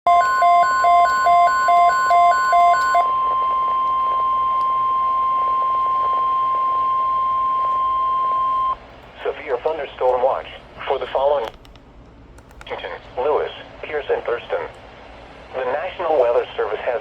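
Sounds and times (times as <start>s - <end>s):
two-pitch alternating beeping: 0.1s - 4.7s
steady single-pitch warning tone: 0.1s - 8.8s.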